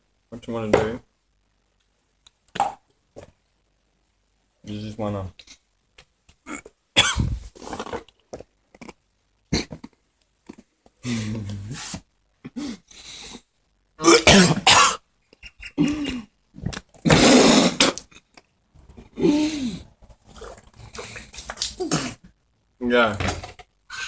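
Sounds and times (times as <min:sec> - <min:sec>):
person coughing: 0:06.5 - 0:07.4, 0:14.0 - 0:15.0, 0:15.6 - 0:16.3.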